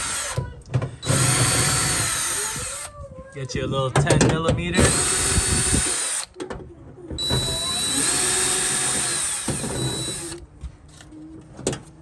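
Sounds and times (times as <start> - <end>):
power drill whining: 0.0 - 2.9, 4.8 - 6.4, 7.2 - 10.4.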